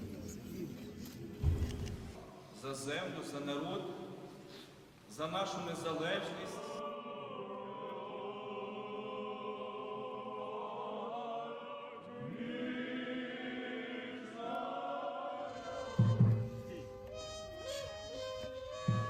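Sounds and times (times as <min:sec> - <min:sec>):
choir singing slow chant: 0:05.3 - 0:17.3.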